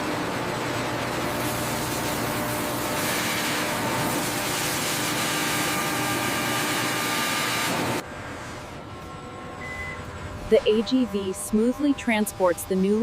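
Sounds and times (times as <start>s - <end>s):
faint humming tones: 8.0s - 13.0s.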